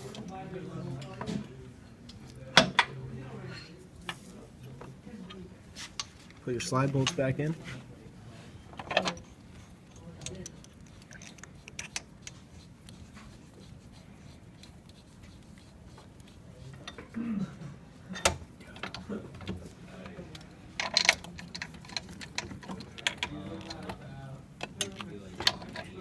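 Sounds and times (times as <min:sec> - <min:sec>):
metallic clicks of bolts and tools: 0:20.8 - 0:23.8.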